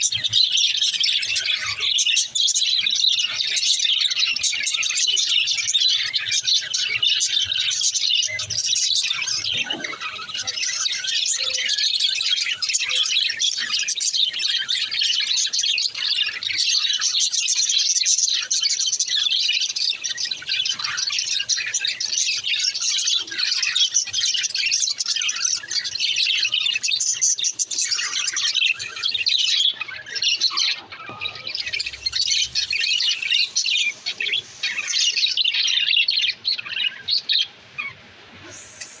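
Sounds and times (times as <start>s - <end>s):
flock of budgerigars chattering: 0.0s - 39.0s.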